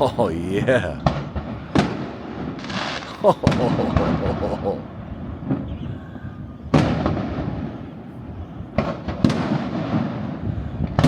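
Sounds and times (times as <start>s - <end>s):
fireworks bangs with rumbling echo: 1.0s - 4.2s, 4.8s - 5.9s, 6.7s - 11.0s.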